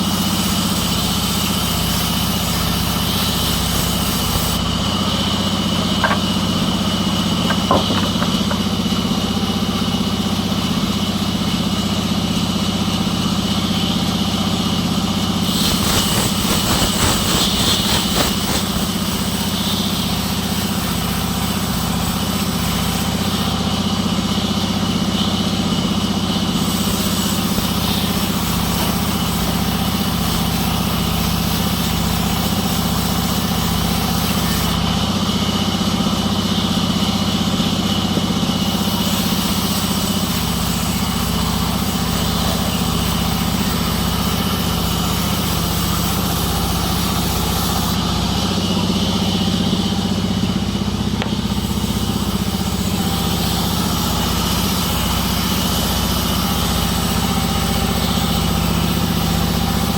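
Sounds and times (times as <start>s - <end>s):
sawmill engine running: 0.0s - 59.9s
rapid rattling clatter: 5.0s - 9.1s, 15.5s - 19.4s.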